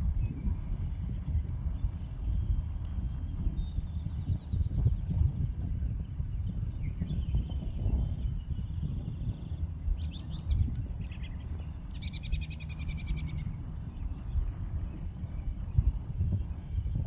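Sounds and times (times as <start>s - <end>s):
steady low rumble: 0.0s - 17.0s
bird trills and chirps: 6.4s - 14.4s.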